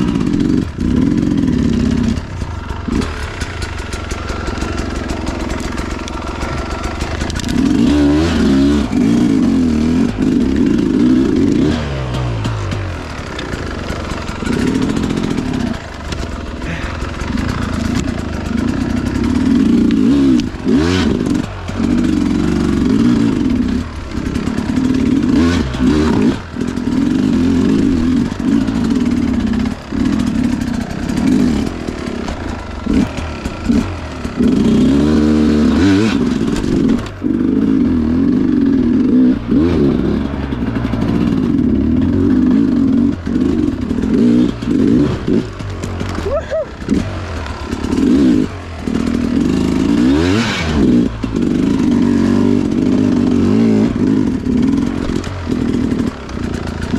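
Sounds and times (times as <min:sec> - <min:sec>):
dirt bike engine revving: 0:00.0 - 0:56.9
sharp knocks and clatter: 0:02.1 - 0:08.4, 0:10.0 - 0:22.2.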